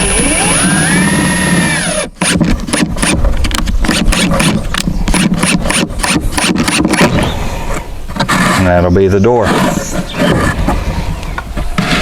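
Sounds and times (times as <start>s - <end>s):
power drill motor whine: 0.0s - 2.4s.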